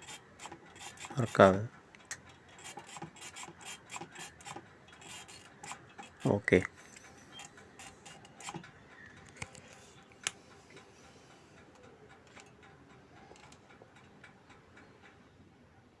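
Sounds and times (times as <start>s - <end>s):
faint light clicks: 6.6s - 15.3s.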